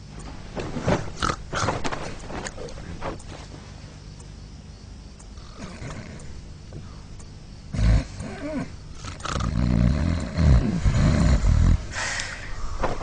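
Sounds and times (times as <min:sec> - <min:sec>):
person snoring loudly: 0:07.7 - 0:12.2
person snorting: 0:07.7 - 0:12.5.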